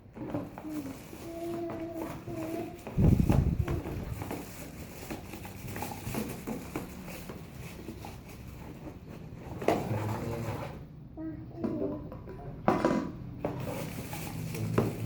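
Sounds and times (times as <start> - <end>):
packaging rustling: 0.2 - 9.2, 13.6 - 15.0.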